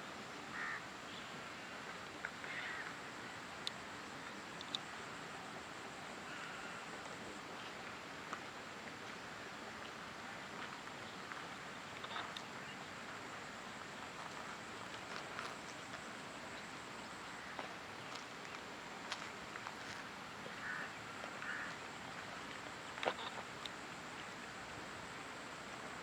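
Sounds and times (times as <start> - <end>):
outdoor background hiss: 0.0 - 26.0.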